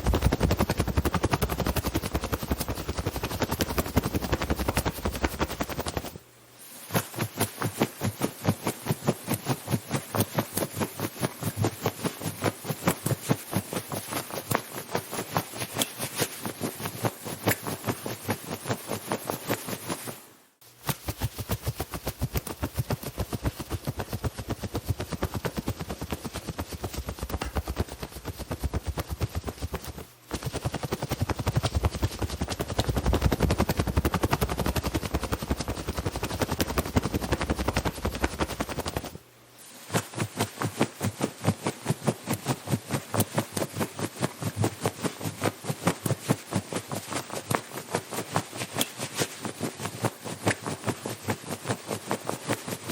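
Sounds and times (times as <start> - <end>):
cartoon running footfalls: 0.0 - 6.2, 6.9 - 20.2, 20.8 - 39.2
clothes rustling: 0.0 - 52.9.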